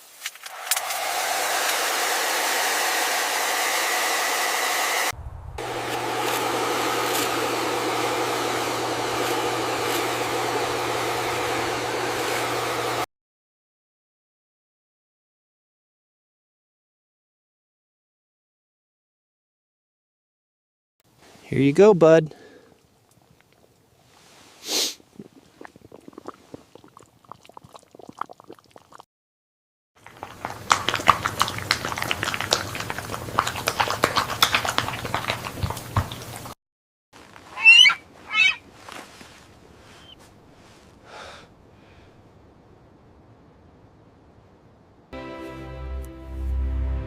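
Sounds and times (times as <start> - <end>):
motor humming and rushing: 0.5 - 13.0
dog chewing with wet crunches: 30.0 - 36.6
dog sniffing: 37.5 - 40.9.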